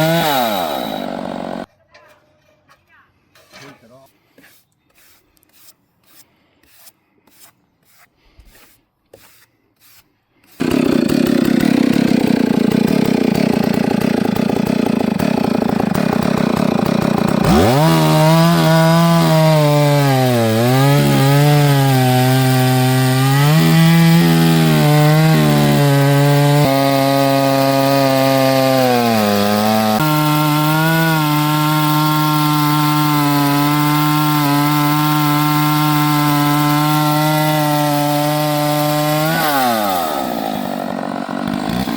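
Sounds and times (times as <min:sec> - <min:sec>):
chainsaw cutting log: 0:00.0 - 0:01.7, 0:04.4 - 0:41.9.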